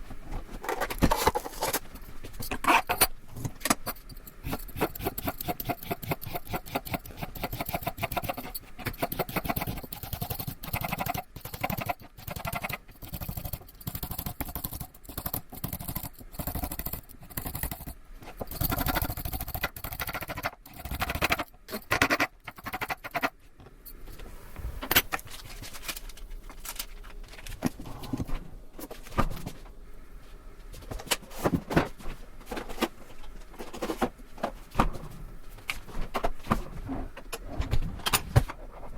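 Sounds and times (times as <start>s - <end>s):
utensils knocking and scraping: 0.3s - 23.4s.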